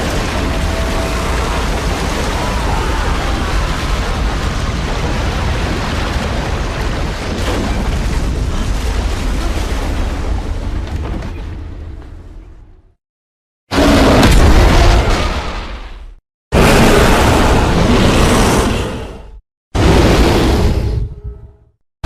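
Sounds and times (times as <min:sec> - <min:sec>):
loud explosion-like rumble: 0:00.0 - 0:11.0.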